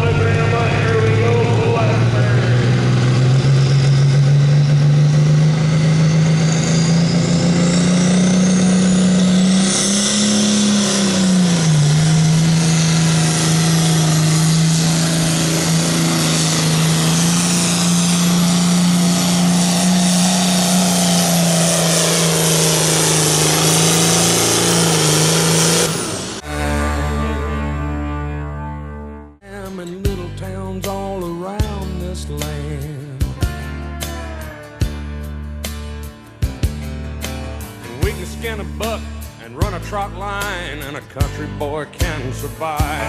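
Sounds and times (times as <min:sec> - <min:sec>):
diesel engine at high revs: 0:00.0 - 0:28.0, 0:36.4 - 0:43.0
high whine: 0:00.0 - 0:29.4.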